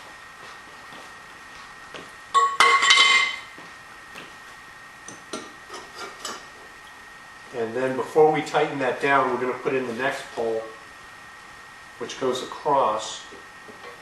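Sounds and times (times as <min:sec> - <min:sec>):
metal clanking with ringing tone: 0:02.4 - 0:03.5.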